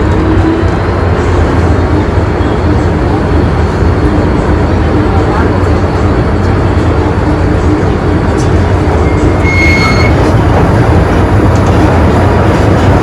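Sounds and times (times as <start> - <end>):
metro train rumbling: 0.0 - 13.0
high whistling tone: 9.0 - 10.3.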